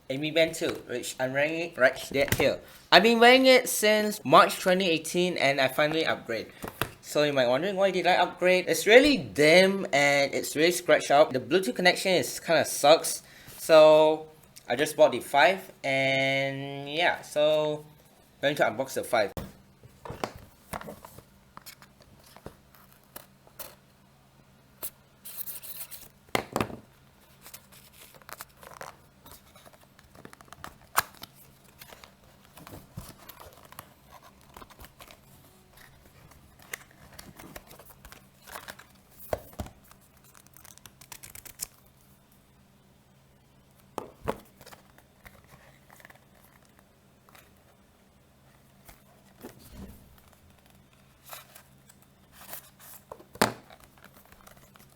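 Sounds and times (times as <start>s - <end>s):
paper packaging tearing and crinkling: 40.0s - 41.8s.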